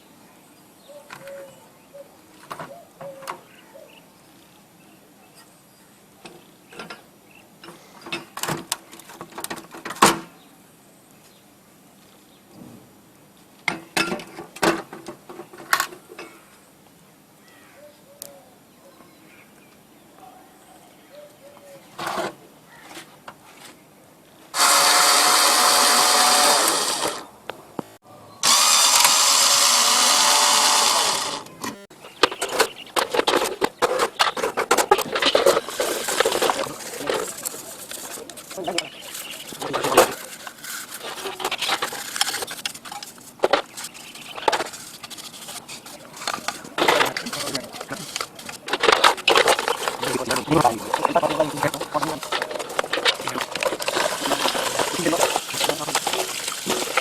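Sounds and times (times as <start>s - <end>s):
handheld electric motor tool: 24.5s - 27.3s, 28.4s - 31.8s
hard parts clicking and knocking: 28.4s - 57.0s.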